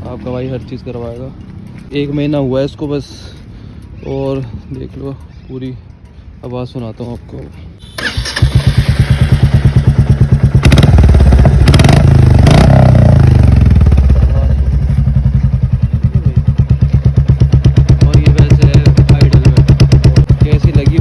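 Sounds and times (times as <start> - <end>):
motorcycle engine revving and idling: 7.9 - 21.0.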